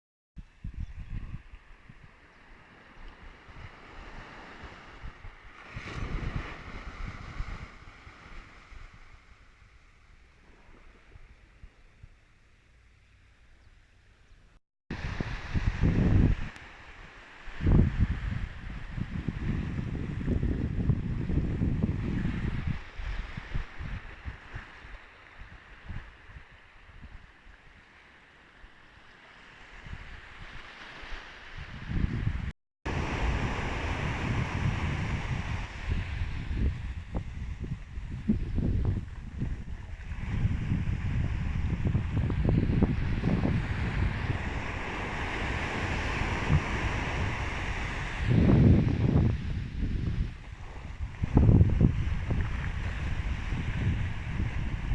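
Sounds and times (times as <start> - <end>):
wind on microphone: 0.4 - 12.3, 14.9 - 27.9, 29.5 - 54.9
sea surf washing in: 14.9 - 20.7, 29.5 - 54.9.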